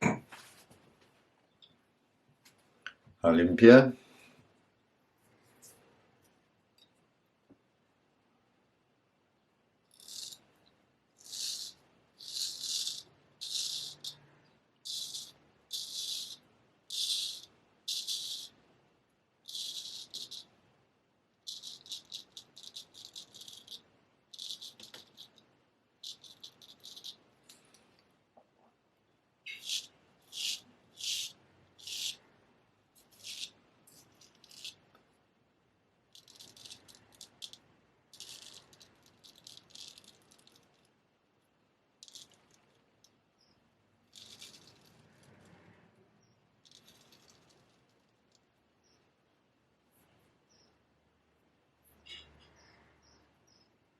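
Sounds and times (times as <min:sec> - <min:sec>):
razor scraping beard stubble: 0:11.2 - 0:14.1, 0:29.5 - 0:32.2, 0:33.0 - 0:34.8.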